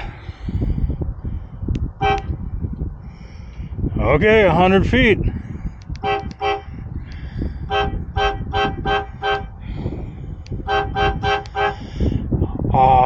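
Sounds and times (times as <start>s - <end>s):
train horn short blasts: 2.0s - 2.3s, 6.0s - 6.7s, 7.7s - 9.5s, 10.6s - 11.9s.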